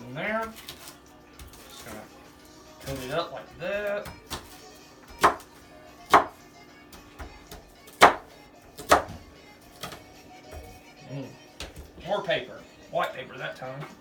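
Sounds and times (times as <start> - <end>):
knife chopping onion: 0.2 - 2.0, 2.8 - 10.8.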